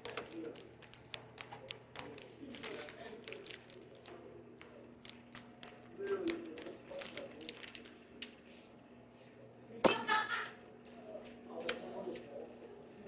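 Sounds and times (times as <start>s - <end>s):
faint voices murmuring: 0.0s - 13.0s.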